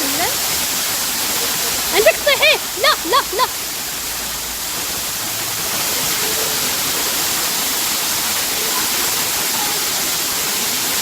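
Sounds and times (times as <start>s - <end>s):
waterfall water pouring and splashing: 0.0s - 11.0s.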